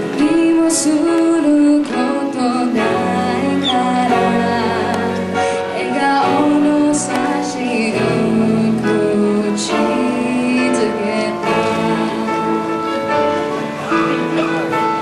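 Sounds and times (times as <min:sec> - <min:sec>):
woman singing: 0:00.0 - 0:13.0
guitars: 0:00.0 - 0:15.0
piano: 0:00.0 - 0:15.0.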